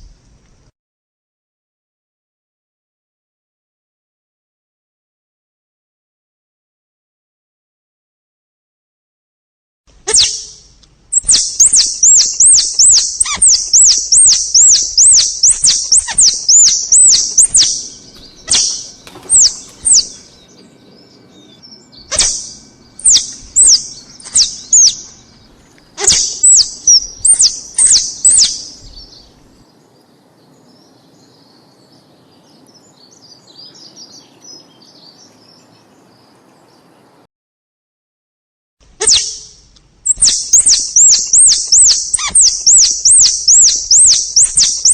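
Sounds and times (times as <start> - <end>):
squirrel chirping: 10.0 - 29.6, 39.0 - 44.9.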